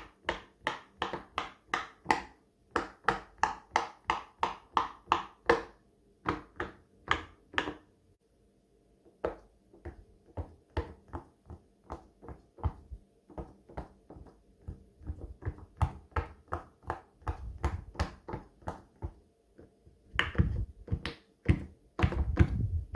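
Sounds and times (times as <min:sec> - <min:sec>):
dull low thuds: 0:22.0 - 0:22.9.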